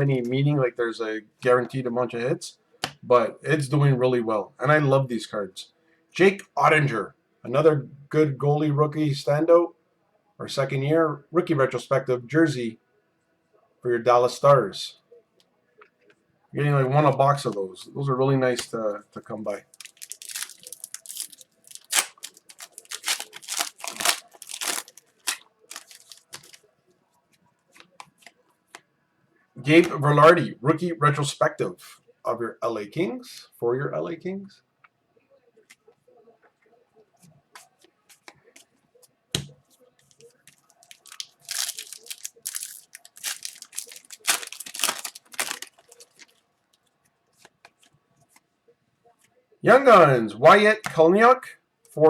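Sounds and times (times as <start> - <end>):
trading cards rustling: 19.5 - 26.6, 40.5 - 46.4.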